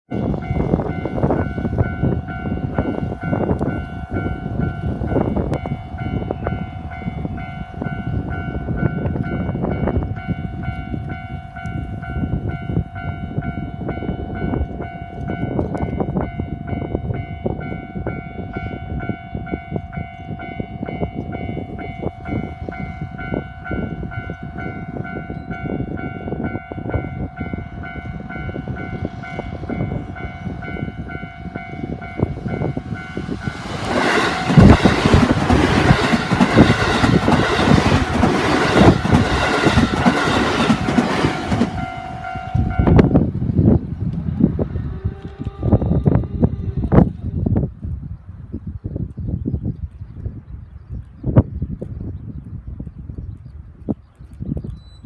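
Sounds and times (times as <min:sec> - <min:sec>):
level-crossing warning bell: 0:00.1 - 0:43.3
wind buffeting microphone: 0:00.1 - 0:55.0.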